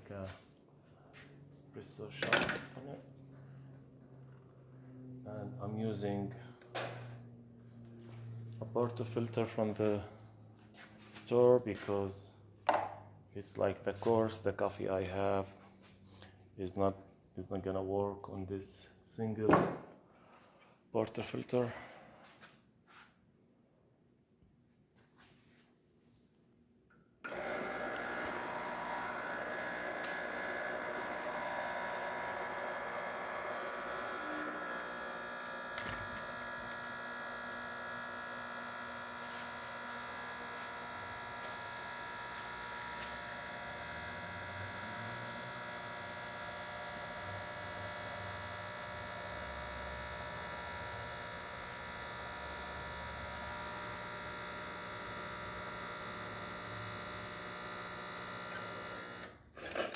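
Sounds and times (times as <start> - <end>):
espresso machine pump buzzing: 27.2 - 59.9.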